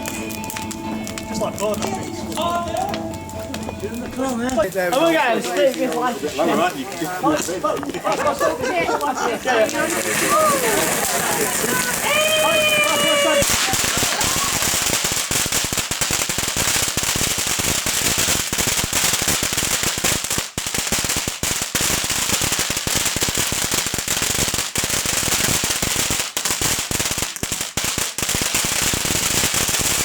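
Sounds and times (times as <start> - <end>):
fire hissing: 0.0 - 15.8
bonfire crackling and popping: 0.0 - 30.0.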